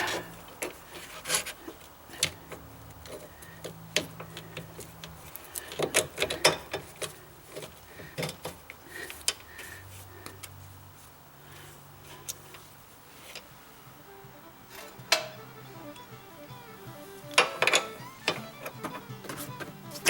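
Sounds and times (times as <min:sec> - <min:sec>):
metal parts clicking and knocking: 0:00.0 - 0:09.5, 0:17.3 - 0:20.0.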